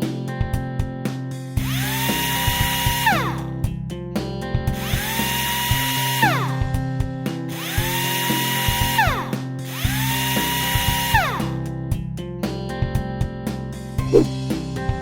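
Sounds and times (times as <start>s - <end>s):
power drill whirring: 1.6s - 3.4s, 4.8s - 6.6s, 7.5s - 11.5s.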